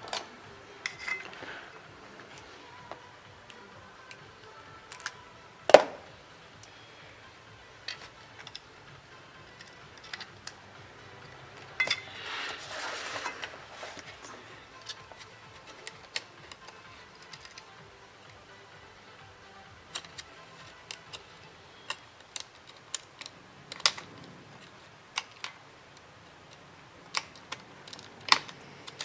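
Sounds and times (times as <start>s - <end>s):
small tools clicking and tapping: 0.0s - 29.0s
short scraping rustle: 12.0s - 14.5s.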